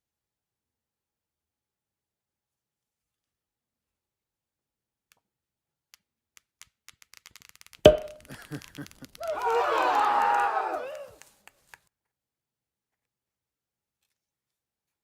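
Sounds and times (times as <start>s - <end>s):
flip book pages clicking: 6.4s - 9.6s
sharp thump: 7.9s - 8.2s.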